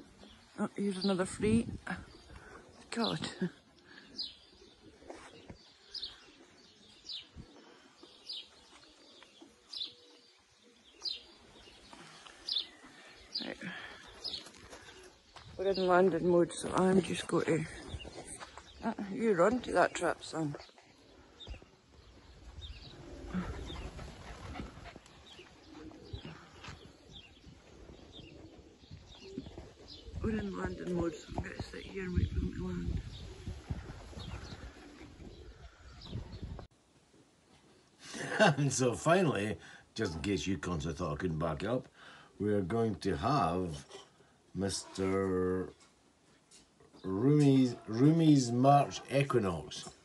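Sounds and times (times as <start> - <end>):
pigeons cooing: 2.0 - 15.8, 21.0 - 36.7.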